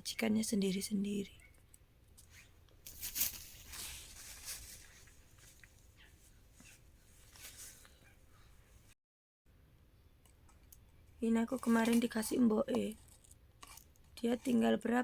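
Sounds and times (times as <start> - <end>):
faint rustling: 2.2 - 8.0.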